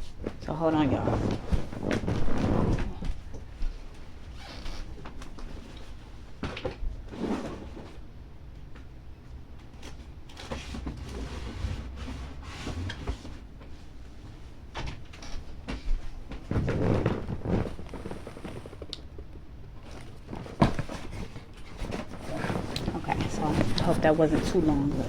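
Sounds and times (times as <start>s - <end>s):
cupboard doors and boxes moved: 0.2s - 3.4s, 9.8s - 18.9s, 19.8s - 25.0s.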